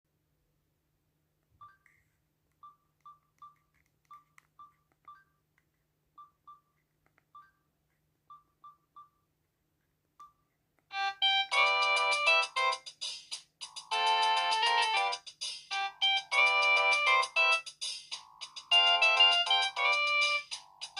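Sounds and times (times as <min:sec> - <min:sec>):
loud ringtone melody: 0:10.9 - 0:13.0, 0:13.6 - 0:20.9.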